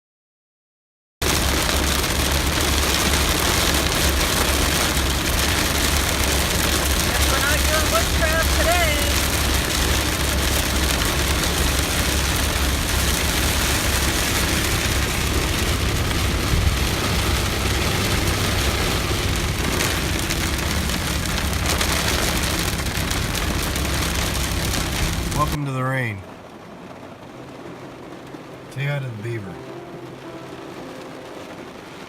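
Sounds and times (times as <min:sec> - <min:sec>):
deep rumble: 0:01.2 - 0:25.6
heavy rain falling: 0:01.2 - 0:32.0.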